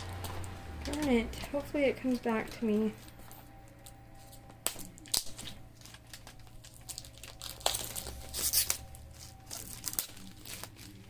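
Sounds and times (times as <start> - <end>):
packaging crinkling and rustling: 2.8 - 11.0.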